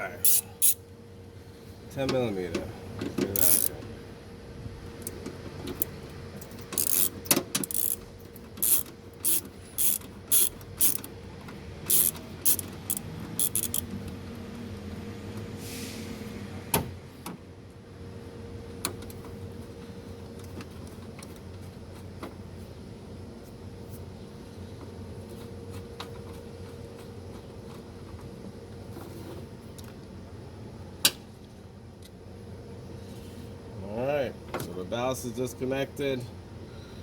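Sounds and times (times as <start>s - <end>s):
ratchet wrench clicking: 0.2s - 0.8s, 3.4s - 3.7s, 5.0s - 11.1s, 11.8s - 14.0s.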